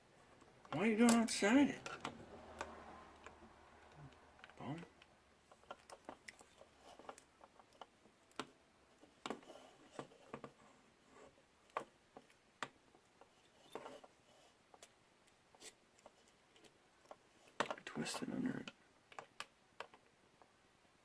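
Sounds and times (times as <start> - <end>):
hands clicking and tapping on camera: 5.5 - 10.6.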